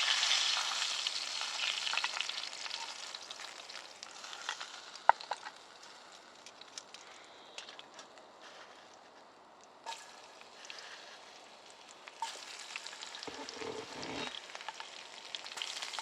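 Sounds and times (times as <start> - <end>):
food sizzling in a pan: 0.0 - 6.5, 9.8 - 16.0
sharp pops and crackles: 2.8 - 8.2.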